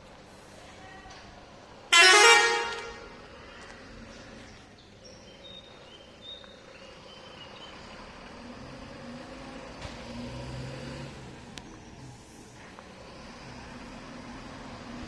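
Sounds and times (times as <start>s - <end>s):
road noise: 0.0s - 15.0s.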